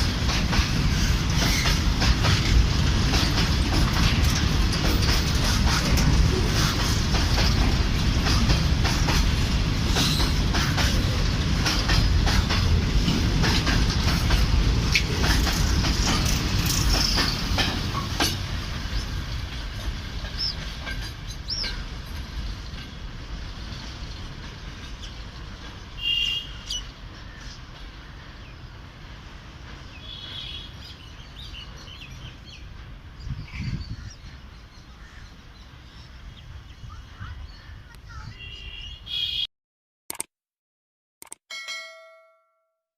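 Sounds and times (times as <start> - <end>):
freight train wheels clattering: 0.0 - 26.3.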